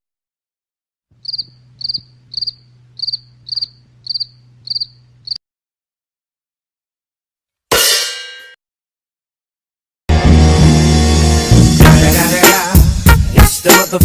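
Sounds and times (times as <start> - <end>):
low steady hum: 1.2 - 5.3
crickets chirping: 1.2 - 5.4.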